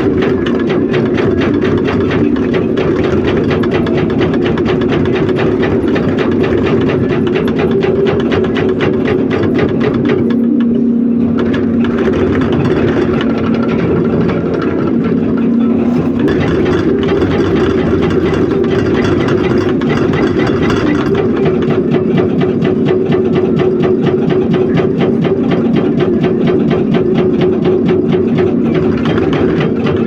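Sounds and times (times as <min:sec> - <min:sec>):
excavator diesel engine running: 0:00.0 - 0:30.0
hydraulic breaker hammering rock: 0:00.0 - 0:30.0.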